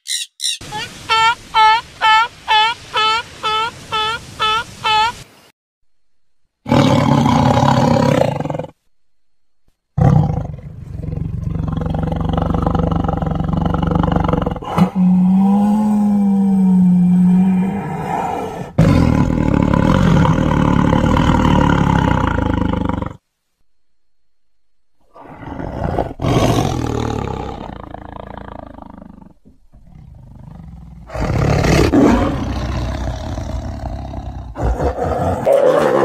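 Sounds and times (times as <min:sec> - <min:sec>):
big cat roaring and growling: 0:06.7 - 0:08.8, 0:10.0 - 0:23.2, 0:25.1 - 0:36.0.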